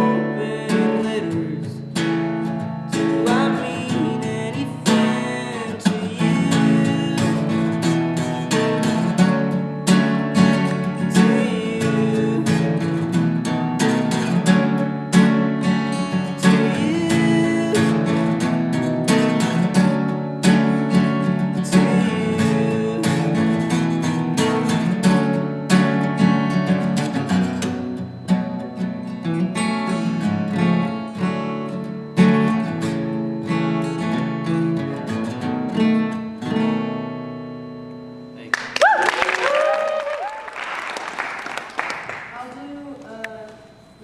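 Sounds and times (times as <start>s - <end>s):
acoustic guitar strumming: 0.0s - 38.8s.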